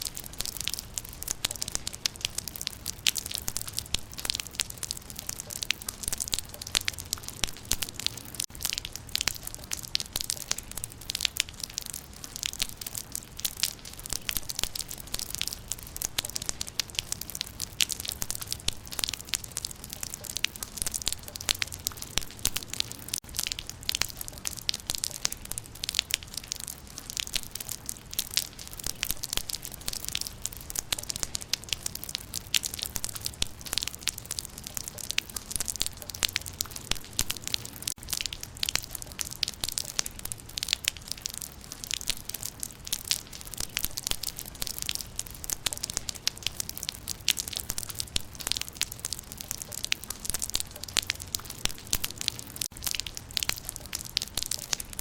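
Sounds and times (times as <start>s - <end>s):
rain pattering on leaves: 0.0s - 55.0s.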